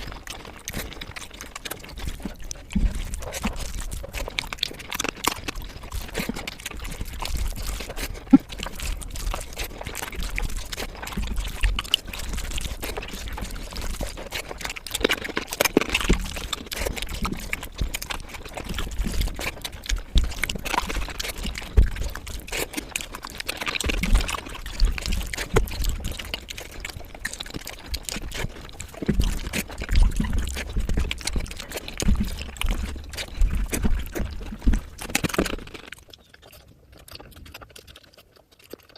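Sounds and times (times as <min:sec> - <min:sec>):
wet chewing and lip smacking: 0:00.0 - 0:38.9
soft low thumps: 0:02.0 - 0:04.6, 0:17.1 - 0:22.5, 0:28.0 - 0:35.4.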